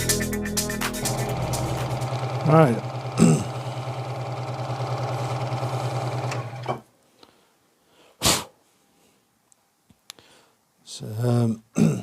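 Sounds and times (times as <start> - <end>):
scroll saw humming: 1.0 - 6.8
short loud hiss: 8.2 - 8.6.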